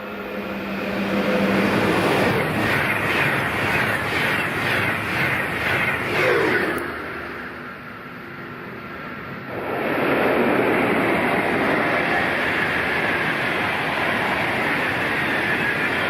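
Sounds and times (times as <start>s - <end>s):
train rushing past: 0.0s - 16.0s.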